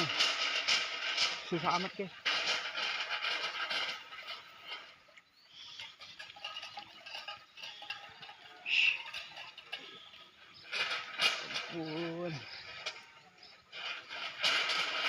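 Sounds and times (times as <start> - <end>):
birds chirping: 4.0 - 14.5.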